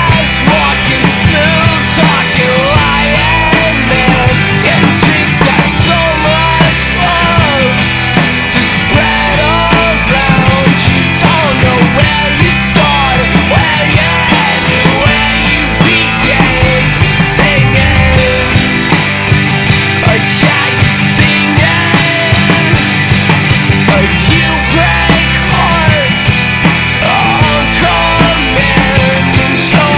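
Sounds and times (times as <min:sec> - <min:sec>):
bass: 0:00.0 - 0:29.9
drums: 0:00.0 - 0:29.9.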